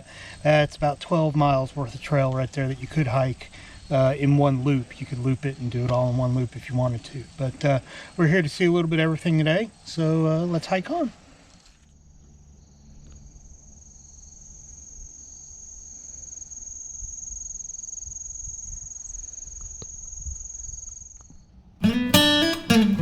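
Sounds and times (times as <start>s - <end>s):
insects buzzing: 0.0s - 23.0s
acoustic guitar strumming: 21.8s - 23.0s.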